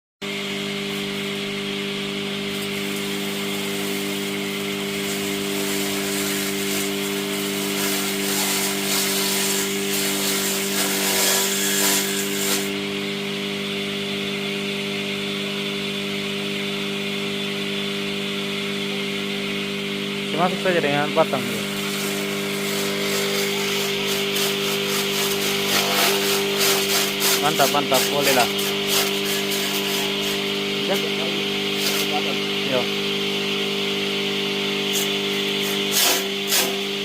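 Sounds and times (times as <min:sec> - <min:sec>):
machine motor hum: 0:00.3 - 0:37.0
vegetables being shredded: 0:02.4 - 0:12.8, 0:21.4 - 0:32.8, 0:34.7 - 0:37.0.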